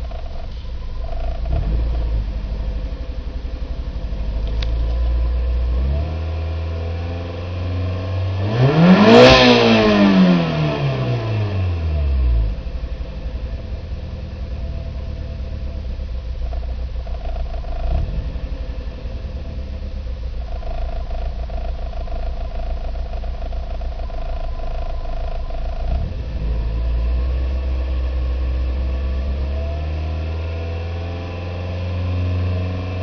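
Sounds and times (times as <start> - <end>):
car engine idling unevenly: 0.0 - 33.0
car engine revving: 0.0 - 33.0.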